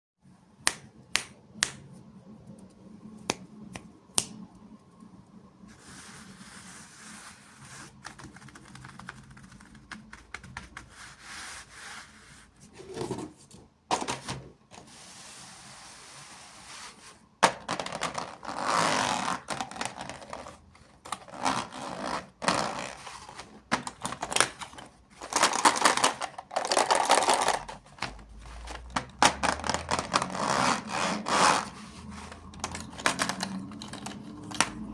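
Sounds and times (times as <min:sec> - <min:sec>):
sharp taps and clicks: 0:00.6 - 0:01.9
packaging scraping and rubbing: 0:17.8 - 0:34.9
packaging rustling: 0:22.5 - 0:34.9.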